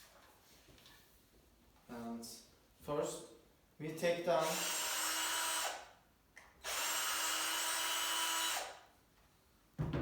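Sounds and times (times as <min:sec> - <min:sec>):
electric screwdriver motor whine: 0:06.6 - 0:08.8.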